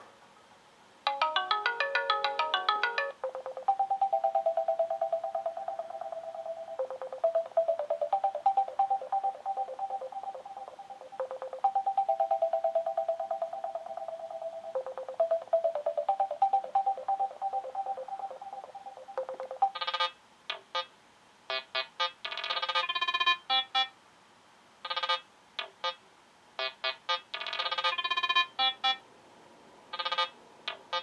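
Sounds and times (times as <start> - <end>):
trilling electronic ringtone: 1.1 - 20.2, 22.3 - 23.9, 26.6 - 29.0, 30.0 - 30.3.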